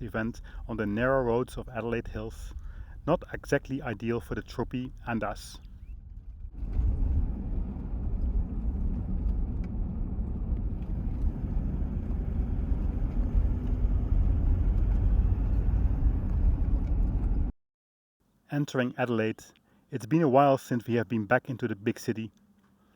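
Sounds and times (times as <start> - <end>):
vehicle engine and road noise: 4.9 - 17.5.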